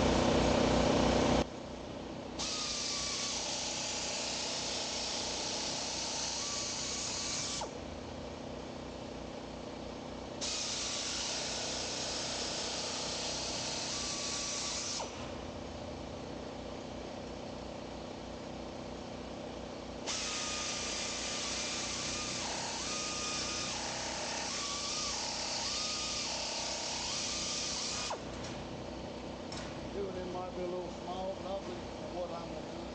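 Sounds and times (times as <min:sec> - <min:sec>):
nibbler cutting sheet steel: 0:02.4 - 0:07.8, 0:10.4 - 0:15.4, 0:20.0 - 0:28.6.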